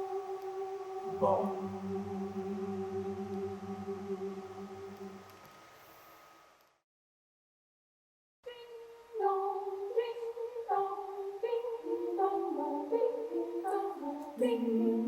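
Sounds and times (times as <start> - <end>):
choir singing a cappella: 0.0 - 5.3, 9.2 - 15.0.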